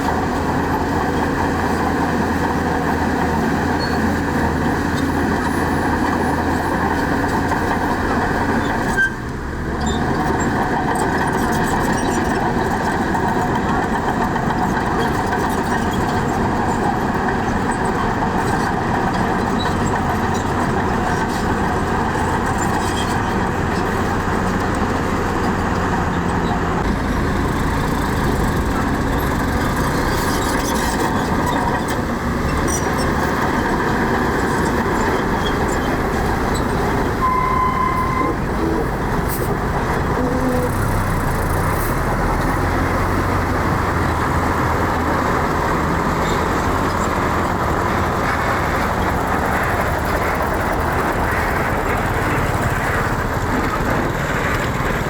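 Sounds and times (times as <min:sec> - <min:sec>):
heavy diesel machinery running: 0:00.0 - 0:55.0
short high beep: 0:37.2 - 0:38.3.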